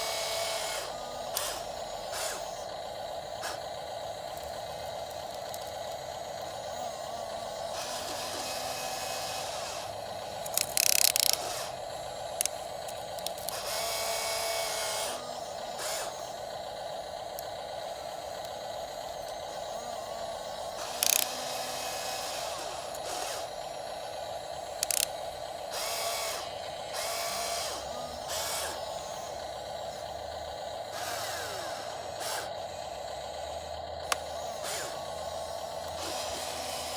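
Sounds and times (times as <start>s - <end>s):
electric gear motors whining: 0.0s - 36.9s
clicks: 34.0s - 35.0s.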